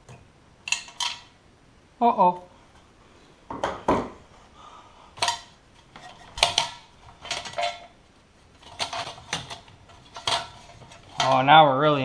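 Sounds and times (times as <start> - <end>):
ceiling fan hardware clinking: 5.2 - 8.0, 8.6 - 12.0.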